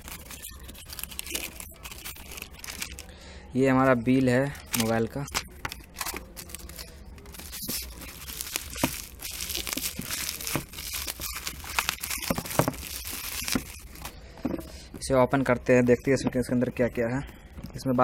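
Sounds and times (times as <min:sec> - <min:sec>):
packaging crinkling and tearing: 0:00.0 - 0:03.1, 0:04.1 - 0:14.2.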